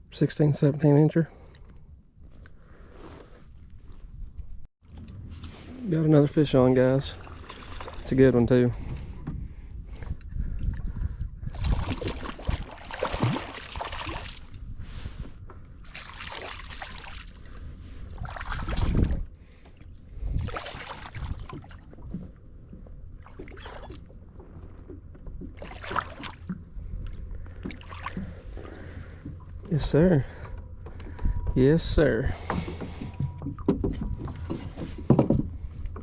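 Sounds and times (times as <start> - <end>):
water splashing around a kayak: 6.6 - 30.9
wind rumble on microphone: 7.1 - 15.9, 17.4 - 19.4, 20.1 - 23.1.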